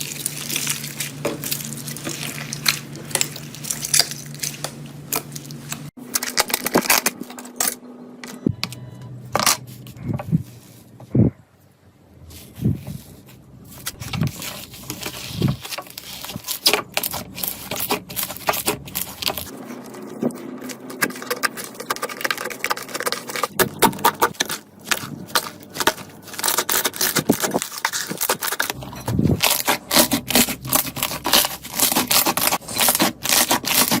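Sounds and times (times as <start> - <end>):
slime crackling and popping: 0.0 - 7.1, 13.9 - 34.0.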